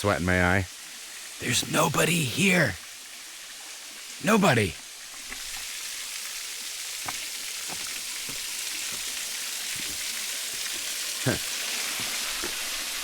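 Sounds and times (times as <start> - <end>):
waterfall rushing: 1.4 - 2.8, 4.2 - 4.8.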